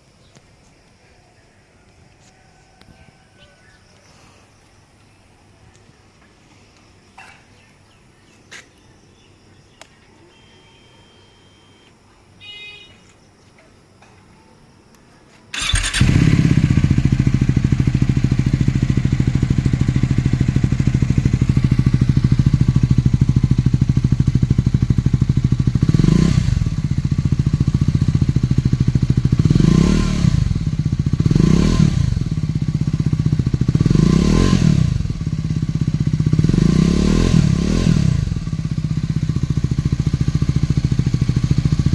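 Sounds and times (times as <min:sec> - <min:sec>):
motorcycle engine starting and idling: 0:15.5 - 0:41.9
engine throttle blips: 0:15.6 - 0:29.4.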